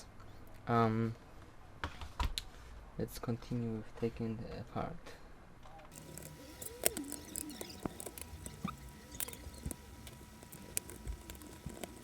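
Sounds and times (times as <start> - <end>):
laptop parts clicking and scratching: 5.9 - 12.0.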